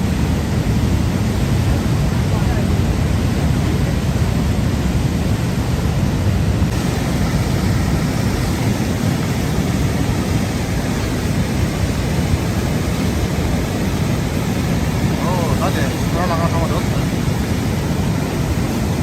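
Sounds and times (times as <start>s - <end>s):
floodwater rushing: 0.0s - 19.0s.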